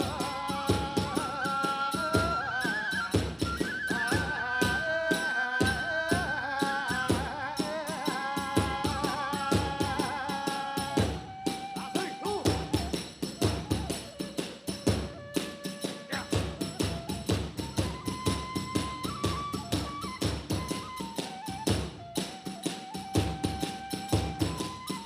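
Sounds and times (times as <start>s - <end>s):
bamboo flute melody: 0.0s - 25.0s.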